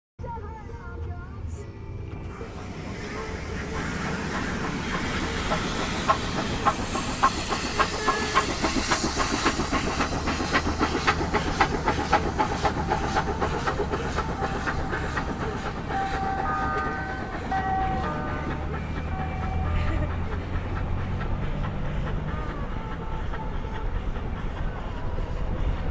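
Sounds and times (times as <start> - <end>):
train wheels clicking over rail joints: 2.2 - 25.9
hiss: 2.3 - 19.4.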